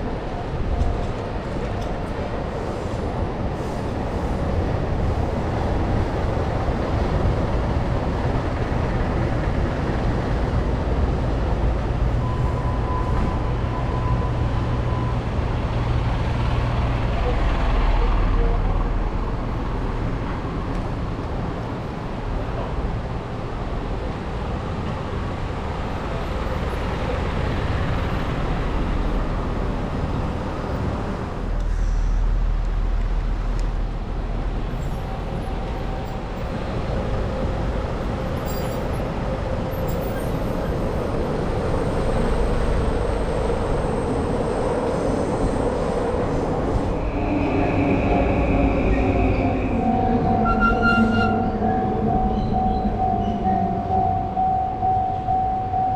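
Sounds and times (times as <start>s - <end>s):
street traffic: 0.0s - 55.9s
train rumbling on rails: 0.0s - 55.9s.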